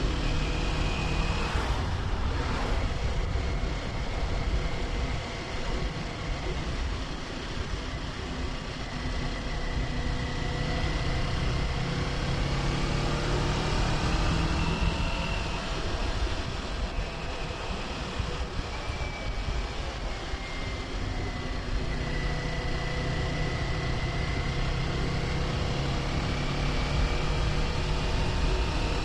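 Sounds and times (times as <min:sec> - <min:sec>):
wind rushing past helmet: 0:01.4 - 0:05.5.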